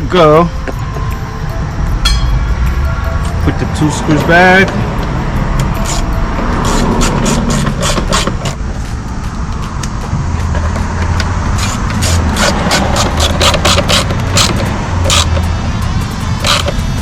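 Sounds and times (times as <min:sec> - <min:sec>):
ratchet clicking: 0:05.6 - 0:08.6, 0:10.5 - 0:17.0.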